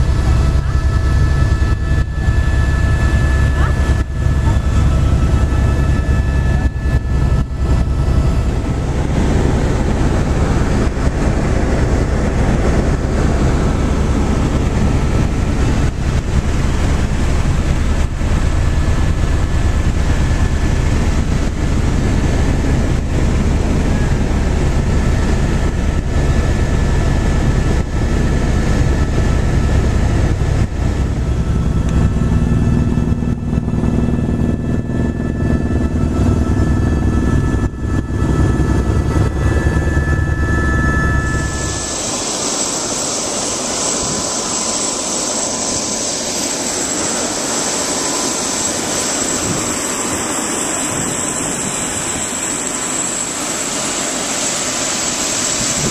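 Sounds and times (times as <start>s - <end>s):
helicopter rotor and engine: 0.0s - 55.9s
turbine whine: 0.0s - 55.9s
low hum: 28.8s - 54.3s.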